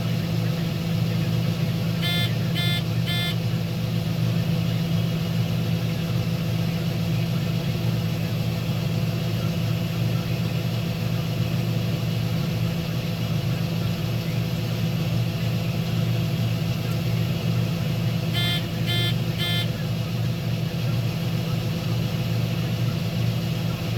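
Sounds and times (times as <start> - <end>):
combine harvester drone: 0.0 - 23.9
short electronic beeps: 2.0 - 3.4, 18.4 - 19.8.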